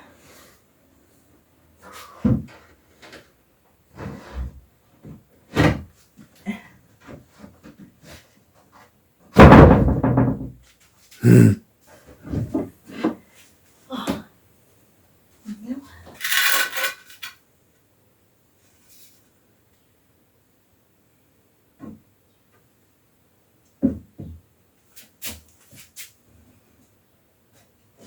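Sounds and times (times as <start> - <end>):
wooden boards knocking: 9.4 - 10.5.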